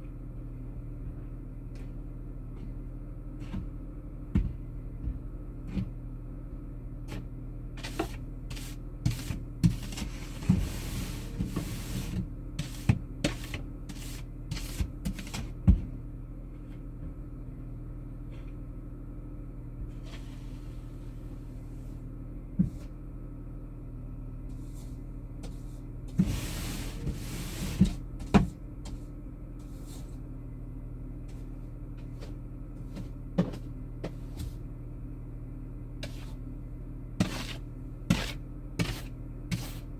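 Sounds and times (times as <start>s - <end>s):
car interior drone: 7.8s - 37.2s.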